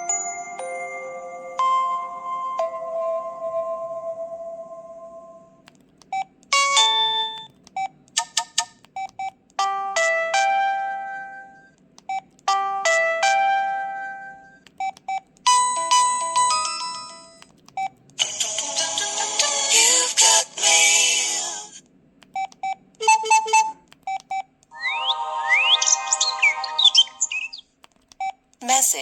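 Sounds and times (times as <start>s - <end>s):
phone ringtone chime tune: 0.0s - 4.3s.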